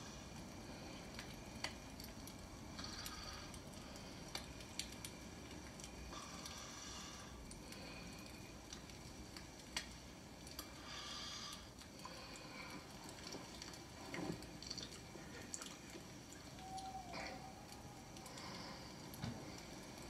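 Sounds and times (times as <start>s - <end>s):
small wet noises: 0.0s - 20.0s
man breathing softly: 10.7s - 12.9s.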